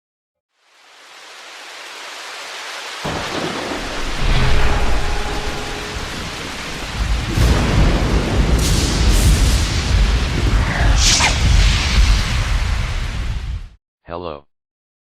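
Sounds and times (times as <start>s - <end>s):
heavy rain hiss: 0.5s - 13.6s
deep rolling thunder: 3.1s - 13.8s.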